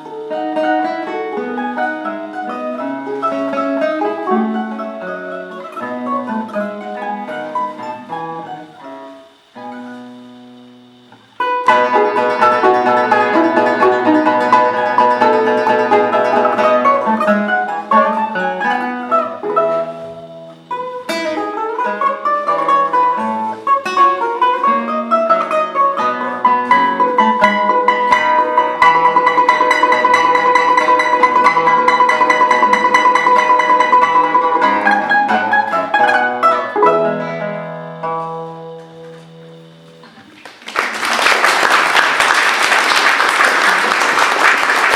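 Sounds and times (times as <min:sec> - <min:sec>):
balalaika and guitar duet: 0:00.0 - 0:40.8.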